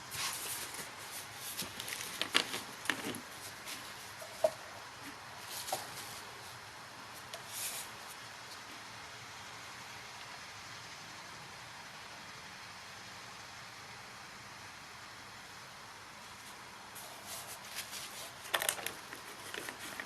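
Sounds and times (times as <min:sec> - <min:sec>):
handling clicks and rustles: 0:00.0 - 0:06.6, 0:16.3 - 0:20.0
steady hiss: 0:00.0 - 0:20.0.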